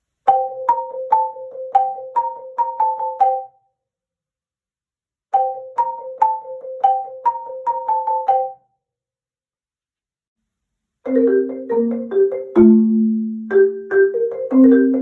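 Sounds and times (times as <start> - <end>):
marimba melody: 0.3 - 3.5, 5.4 - 8.6, 11.1 - 15.0.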